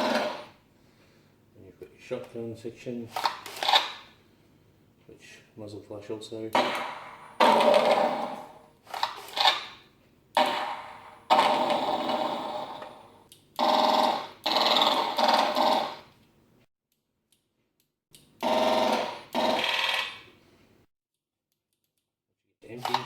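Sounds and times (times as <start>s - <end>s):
electronic gunfire sound effects: 6.6s - 8.6s, 10.4s - 12.8s.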